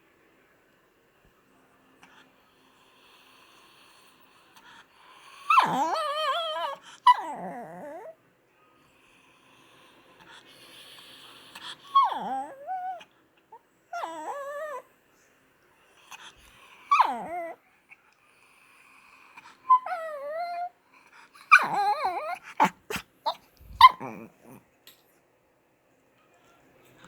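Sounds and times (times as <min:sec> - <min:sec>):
dog whining and yowling: 0:05.4 - 0:08.2, 0:11.8 - 0:13.1, 0:13.9 - 0:14.9, 0:16.8 - 0:17.6, 0:19.6 - 0:24.6.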